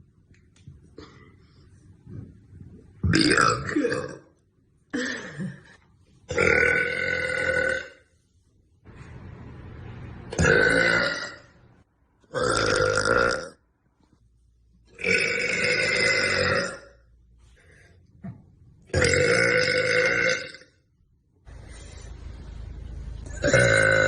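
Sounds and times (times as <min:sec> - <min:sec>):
woman burping loudly: 0:03.0 - 0:04.3, 0:04.9 - 0:05.7, 0:06.3 - 0:08.0, 0:10.3 - 0:11.5, 0:12.3 - 0:13.6, 0:15.0 - 0:17.0, 0:18.9 - 0:20.8, 0:23.3 - 0:24.0.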